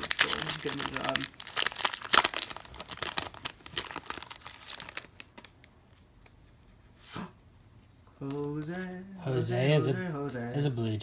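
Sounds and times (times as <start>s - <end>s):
plastic wrapper crinkling and tearing: 0.0s - 5.7s.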